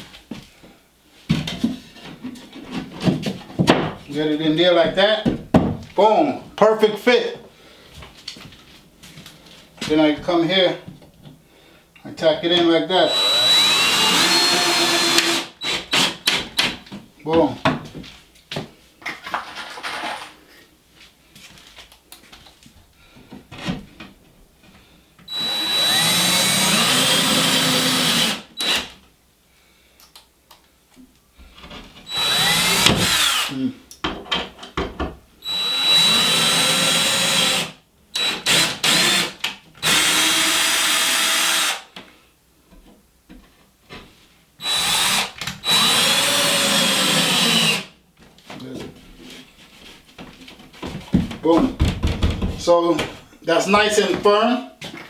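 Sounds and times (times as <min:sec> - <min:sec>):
power drill driving screws: 0:13.1 - 0:16.7, 0:25.3 - 0:29.0, 0:32.1 - 0:33.5, 0:35.4 - 0:41.9, 0:44.6 - 0:47.9.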